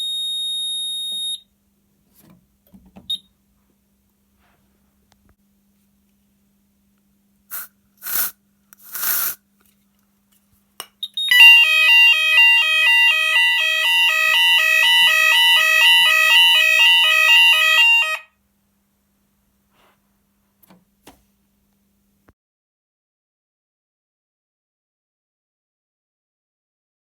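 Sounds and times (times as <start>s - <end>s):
two-tone fire alarm: 0.0s - 1.5s, 11.1s - 18.4s.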